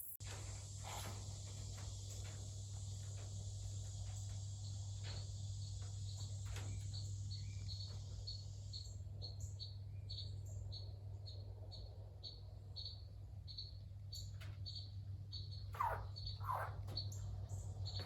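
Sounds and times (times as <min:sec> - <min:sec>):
steady low hum: 0:00.0 - 0:18.0
small animal chirping: 0:15.4 - 0:17.3.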